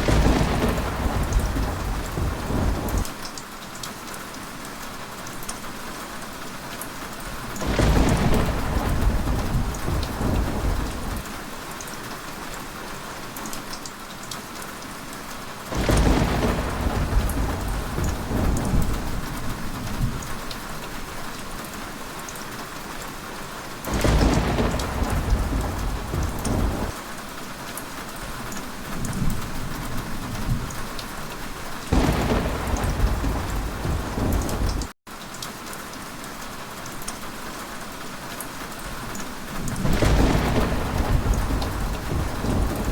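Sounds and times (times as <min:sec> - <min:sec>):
thunder rolling: 0:00.0 - 0:03.1, 0:07.6 - 0:11.3, 0:15.7 - 0:21.1, 0:23.9 - 0:27.0, 0:28.9 - 0:34.9, 0:39.6 - 0:42.9
heavy rain: 0:00.0 - 0:42.9.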